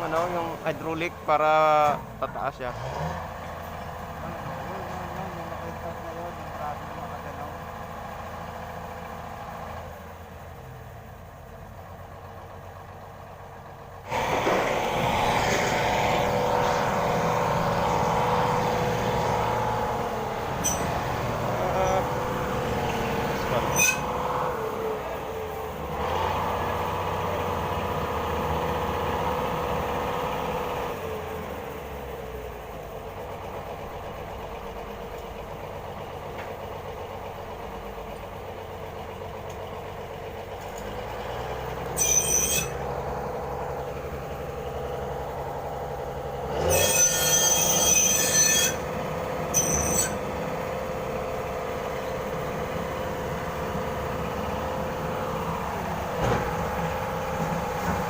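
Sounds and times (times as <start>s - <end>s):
drilling machine drone: 14.0s - 58.0s
high-pitched metal squeals: 20.5s - 24.4s, 41.8s - 42.9s, 46.6s - 48.9s, 49.5s - 50.3s.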